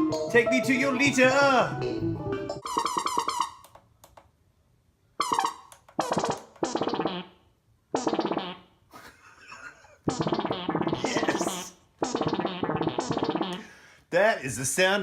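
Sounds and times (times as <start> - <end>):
buzzy synthesizer phrases: 10.1 - 13.6.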